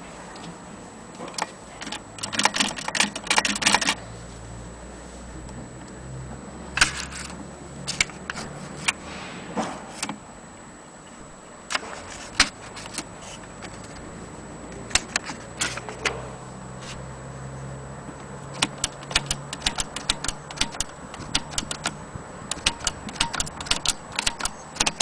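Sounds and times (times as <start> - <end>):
typewriter clacking: 1.8 - 4.0, 18.6 - 25.0.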